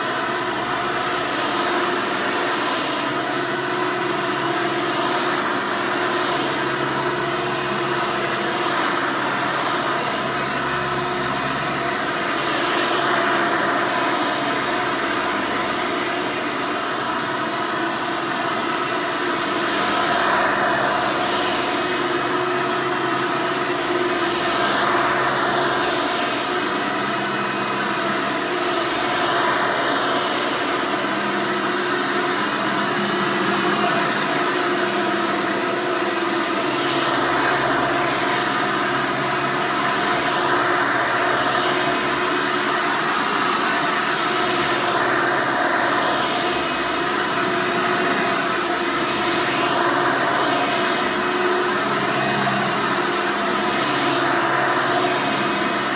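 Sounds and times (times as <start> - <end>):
upright vacuum cleaner running: 0.0 - 55.9.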